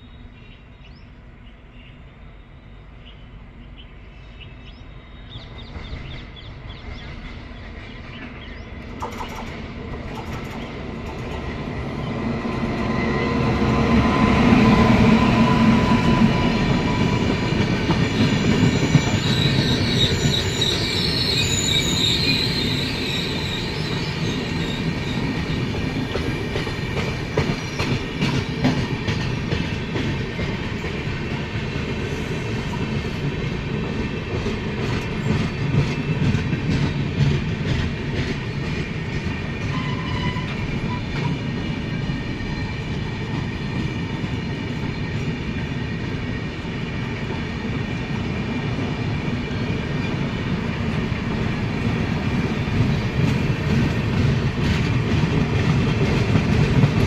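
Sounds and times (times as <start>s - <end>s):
train wheels rumbling on rails: 4.6s - 57.0s
wheels clicking over rail joints: 8.8s - 11.8s.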